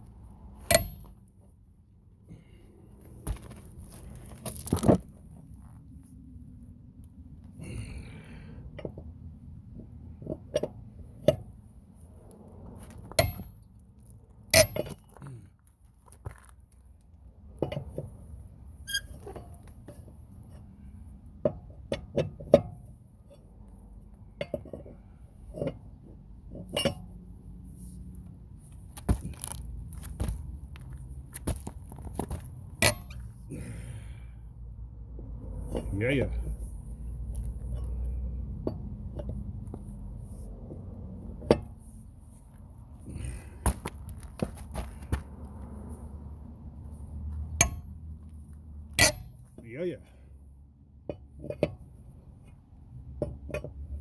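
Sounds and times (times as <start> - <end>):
lug wrench clanking on nuts: 0.6 - 1.3, 9.8 - 11.6, 12.8 - 13.7, 14.5 - 15.4, 18.8 - 20.7, 24.3 - 27.2, 28.9 - 34.1, 35.6 - 36.7, 47.5 - 50.2, 51.0 - 54.0.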